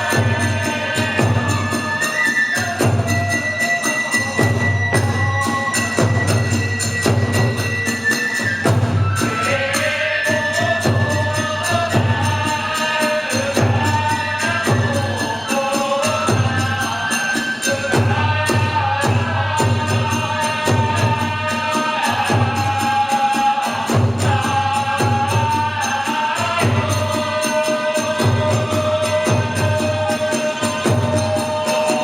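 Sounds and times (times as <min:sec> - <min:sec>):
flute melody: 0:00.0 - 0:10.8
drum beating fast rhythm: 0:00.0 - 0:32.0.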